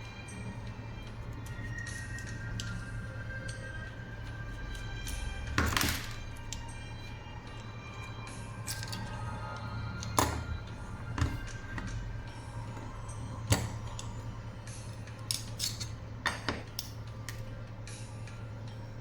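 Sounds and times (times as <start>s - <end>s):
low steady hum: 0.0s - 19.0s
soft background music: 0.0s - 19.0s
metal parts clicking: 8.6s - 9.2s, 15.3s - 17.4s.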